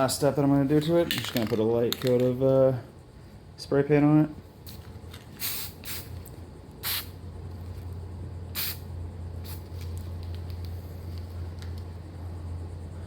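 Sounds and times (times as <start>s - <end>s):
steady low hum: 0.0s - 13.0s
spray paint can hissing: 4.7s - 6.2s, 6.8s - 7.2s, 8.5s - 10.6s.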